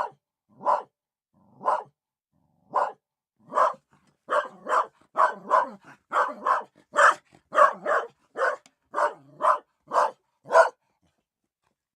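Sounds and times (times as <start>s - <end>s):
dog barking: 0.0s - 2.0s, 2.6s - 10.9s.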